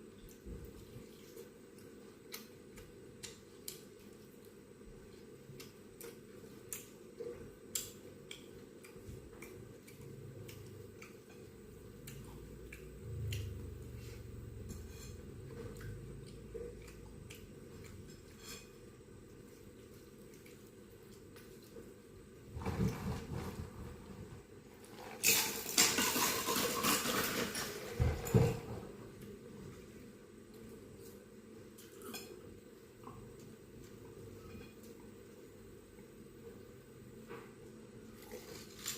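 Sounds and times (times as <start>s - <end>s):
chewing food: 0.1s - 14.7s, 15.4s - 18.4s, 19.2s - 22.0s
soft low rumble: 11.8s - 18.4s.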